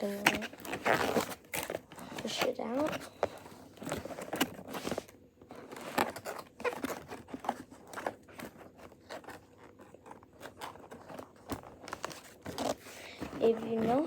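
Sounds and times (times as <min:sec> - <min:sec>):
plastic packaging crinkling: 0:00.0 - 0:14.0
toy scraping and clicking on box: 0:00.0 - 0:14.0.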